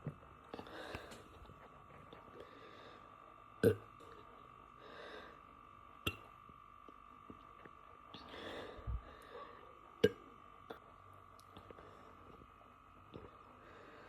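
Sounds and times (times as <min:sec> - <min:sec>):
short low burp: 0:03.6 - 0:03.9
soft breaths: 0:08.2 - 0:09.8, 0:13.2 - 0:14.0.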